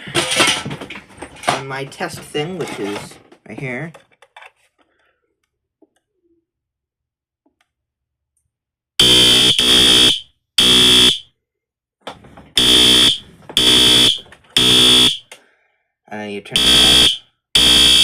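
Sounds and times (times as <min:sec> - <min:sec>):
fire alarm horn blasts: 0:09.0 - 0:11.3, 0:12.6 - 0:15.3, 0:16.6 - 0:18.0.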